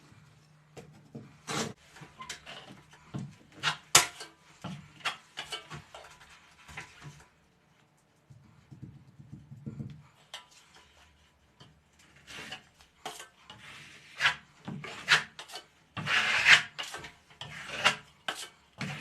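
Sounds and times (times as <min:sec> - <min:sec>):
hand tool rasping: 0:12.2 - 0:19.0.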